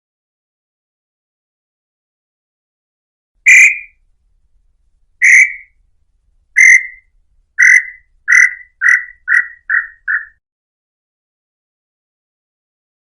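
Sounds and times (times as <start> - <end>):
bird whistling short notes: 3.5 - 4.0, 5.2 - 5.7, 6.6 - 7.0, 7.6 - 10.4.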